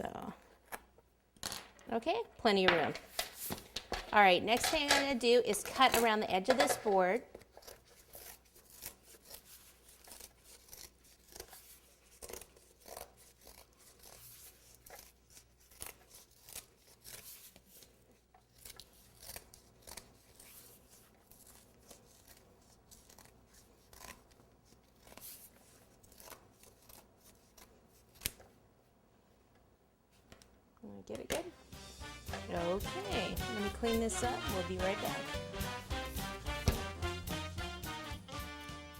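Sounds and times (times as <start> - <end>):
scissors cutting cardboard: 6.6 - 28.4.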